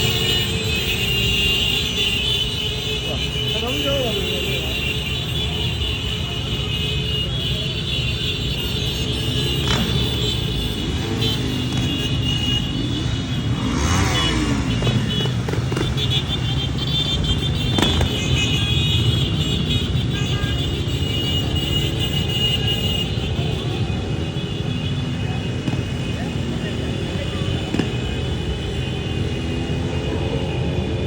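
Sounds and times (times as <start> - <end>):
engine revving: 13.4 - 16.0.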